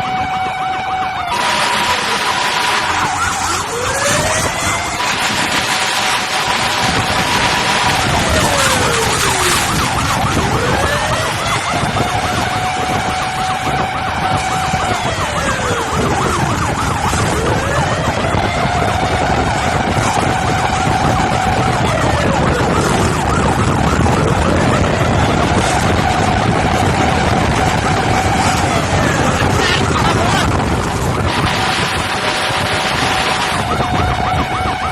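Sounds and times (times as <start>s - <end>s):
fast warbling siren: 0.0s - 34.9s
wailing siren: 0.0s - 34.9s.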